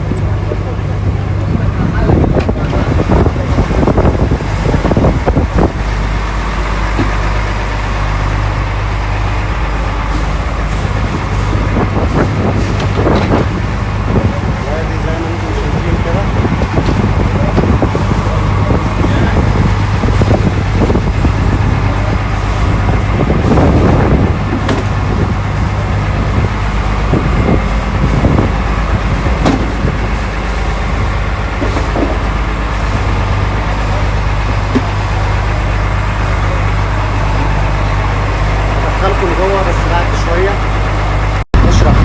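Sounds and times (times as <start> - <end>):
boat engine droning: 0.0 - 42.0.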